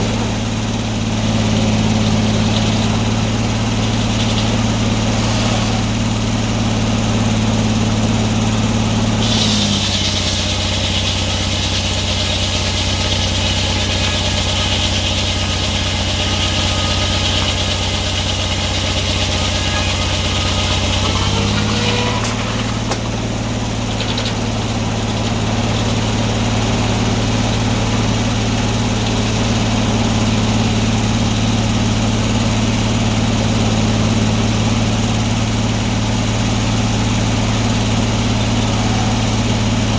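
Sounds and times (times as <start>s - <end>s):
sawmill engine running: 0.0s - 39.9s
saw blade hissing through log: 4.4s - 6.3s, 9.1s - 23.2s.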